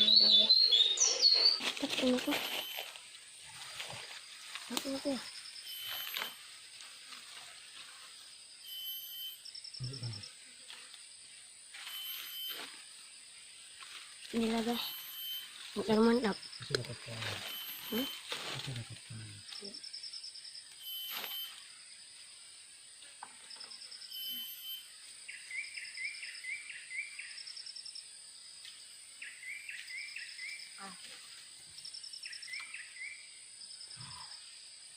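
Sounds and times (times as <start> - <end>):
high insect hum: 0.0 - 34.9.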